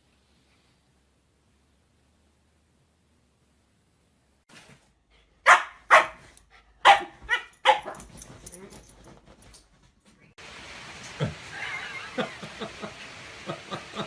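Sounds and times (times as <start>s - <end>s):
dog barking: 5.4s - 6.2s, 6.8s - 8.1s.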